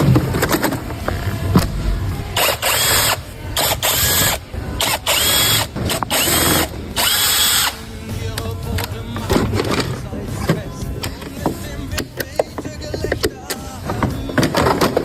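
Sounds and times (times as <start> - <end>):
power wrench whirring: 2.2 - 7.9.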